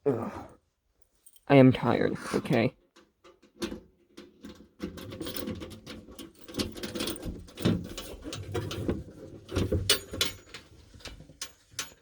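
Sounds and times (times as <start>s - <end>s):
clicks scrapes and rattles: 2.5s - 12.0s.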